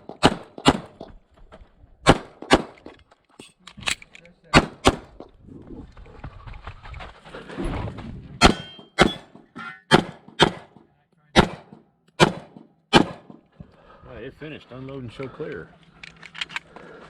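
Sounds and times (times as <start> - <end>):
handgun shots: 0.0 - 1.0, 2.0 - 2.9, 8.4 - 10.8, 11.4 - 13.4.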